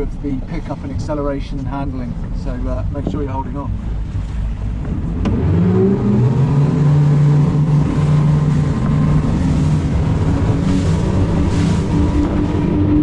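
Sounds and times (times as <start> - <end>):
outboard motors accelerating: 0.0 - 13.0.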